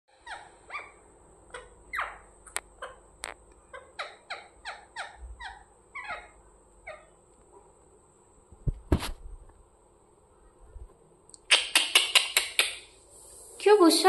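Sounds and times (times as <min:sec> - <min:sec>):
parrot chirping: 0:00.1 - 0:07.2, 0:11.4 - 0:13.0
sharp clicks: 0:11.3 - 0:12.8.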